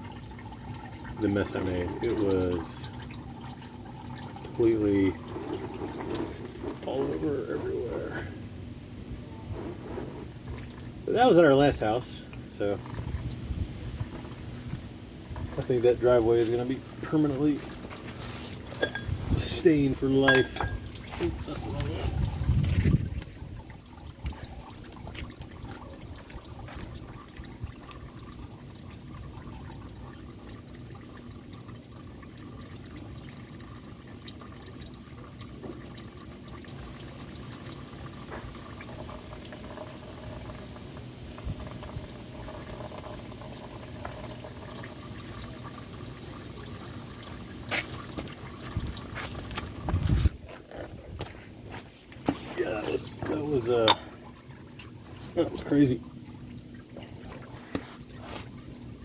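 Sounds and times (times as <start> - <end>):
oil pouring into a pan: 14.0 - 49.9.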